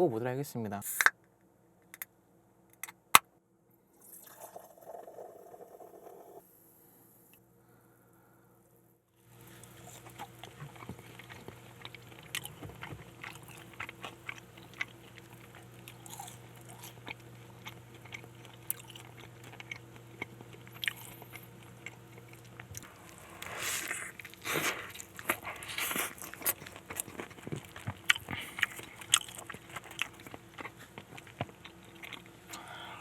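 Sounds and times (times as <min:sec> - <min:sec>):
steady low hum: 0:06.2 - 0:33.0
crunchy chewing close-up: 0:09.3 - 0:33.0.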